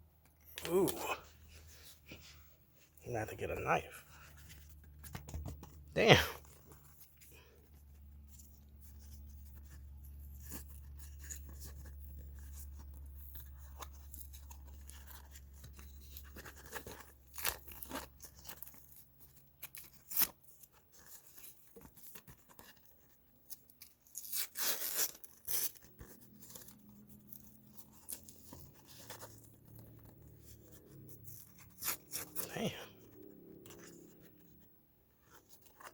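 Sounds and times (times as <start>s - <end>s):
plastic packaging tearing and crackling: 10.4s - 20.6s, 23.5s - 30.1s.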